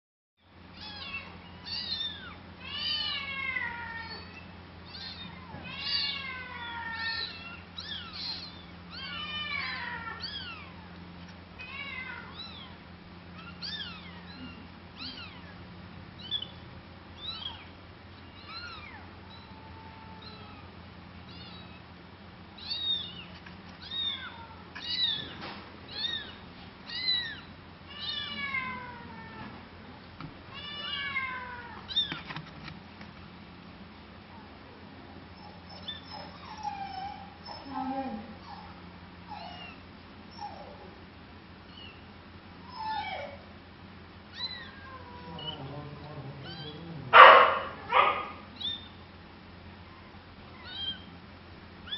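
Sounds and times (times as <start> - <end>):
steady low hum: 0.4 - 51.9
cat mewing: 0.8 - 10.9, 11.6 - 15.6, 17.2 - 21.8, 22.6 - 29.6, 30.5 - 32.4, 44.3 - 45.8, 46.4 - 49.0, 50.5 - 51.1.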